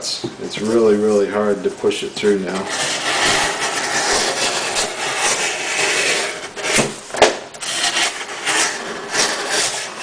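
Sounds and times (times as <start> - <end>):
knife rasping through cardboard: 2.6 - 10.0.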